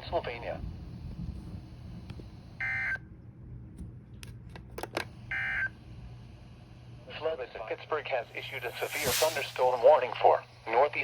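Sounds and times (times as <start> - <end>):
low hum: 5.2 - 11.0
buzzy digital data tones: 8.3 - 10.1.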